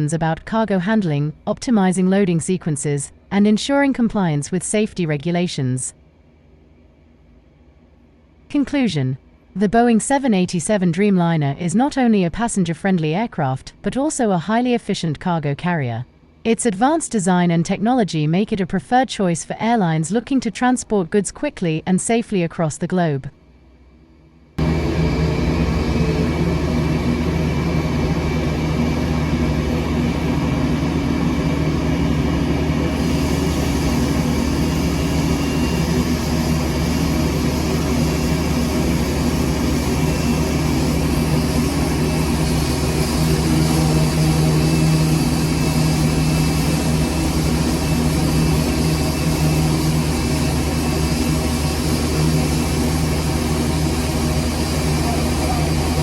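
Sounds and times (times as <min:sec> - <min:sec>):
jet engines running: 0:24.6 - 0:56.0.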